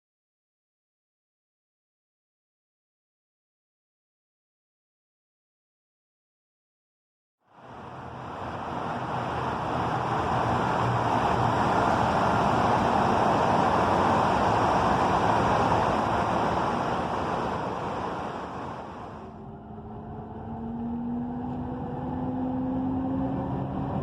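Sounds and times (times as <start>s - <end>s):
low engine hum: 7.5s - 24.0s
rushing vehicle noise: 7.5s - 24.0s.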